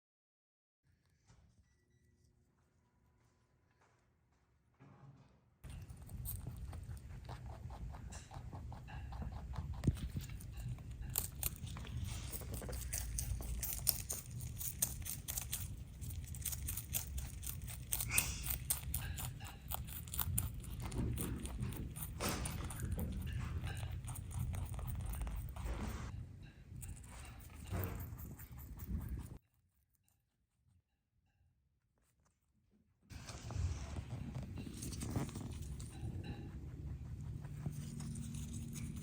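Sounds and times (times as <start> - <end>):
rabbits crunching greens: 5.7 - 26.1, 26.7 - 30.3, 33.2 - 39.0.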